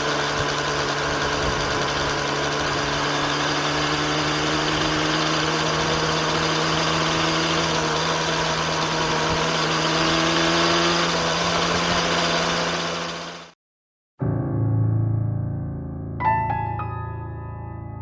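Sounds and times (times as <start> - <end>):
motorcycle engine idling: 0.0 - 13.5.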